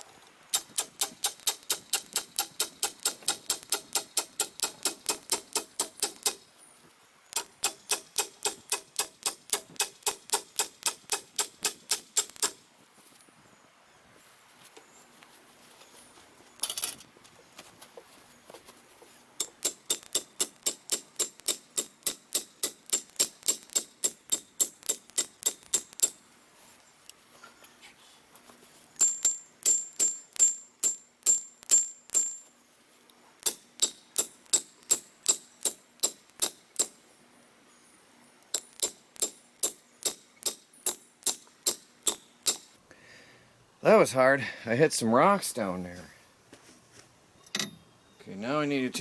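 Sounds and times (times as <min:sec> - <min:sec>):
post driver striking metal post: 0:00.6 - 0:06.4, 0:07.4 - 0:12.6, 0:19.4 - 0:26.2, 0:29.0 - 0:32.4, 0:33.4 - 0:37.0, 0:38.5 - 0:42.7.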